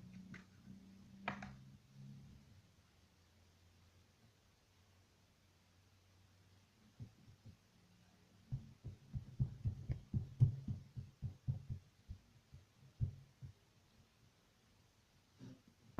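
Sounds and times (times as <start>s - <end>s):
soft low thumps: 8.5s - 13.6s.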